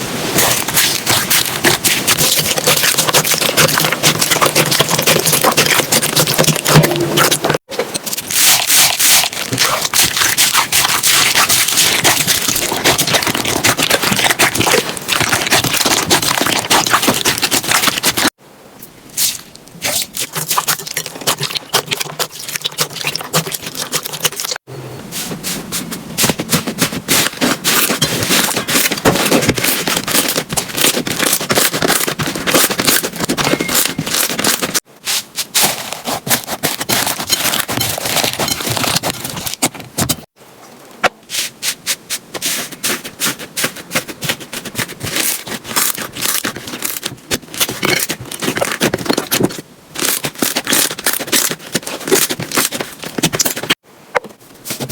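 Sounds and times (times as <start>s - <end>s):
slime crackling and popping: 0.4s - 18.4s, 19.2s - 24.6s, 27.1s - 34.8s, 44.3s - 53.8s.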